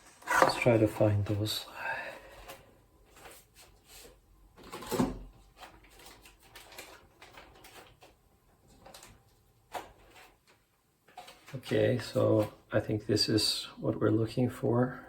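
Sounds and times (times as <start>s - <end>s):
packaging rustling: 4.6s - 12.6s.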